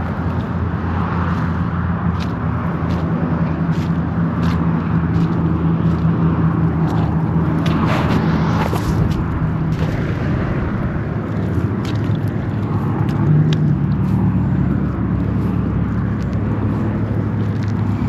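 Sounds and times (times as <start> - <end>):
engine drone: 0.0 - 18.0
low rumble: 6.5 - 18.0.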